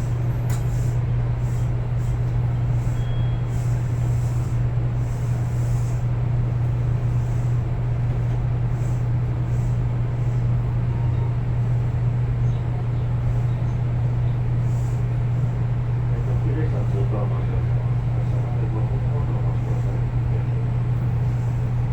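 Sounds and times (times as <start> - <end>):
electric train humming: 0.0 - 21.9.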